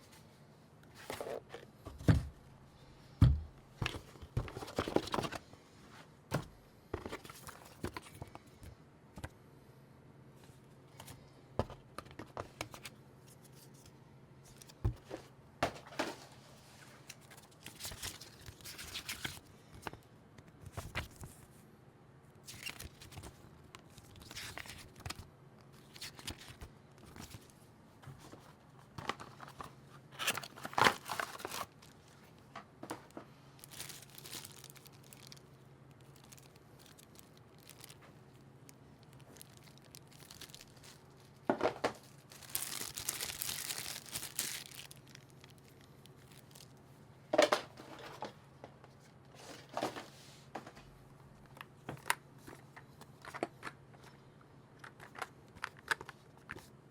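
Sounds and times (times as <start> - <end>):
packaging rustling and crinkling: 3.8 - 5.5, 7.0 - 8.4, 17.0 - 20.0, 28.2 - 46.8
packaging tearing: 30.2 - 32.0, 33.6 - 35.4, 39.0 - 41.1, 42.3 - 46.7.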